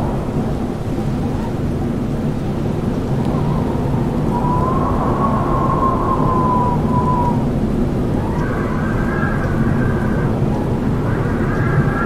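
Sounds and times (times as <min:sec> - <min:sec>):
strong wind rushing: 0:00.0 - 0:12.0.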